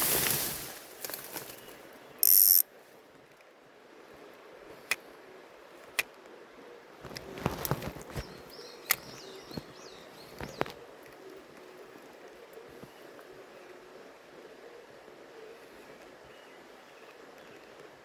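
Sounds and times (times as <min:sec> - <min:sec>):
handling rustle: 0:00.0 - 0:02.6, 0:07.0 - 0:13.3
fishing reel whirring: 0:02.2 - 0:02.6
reel mechanism clicks: 0:02.2 - 0:02.6.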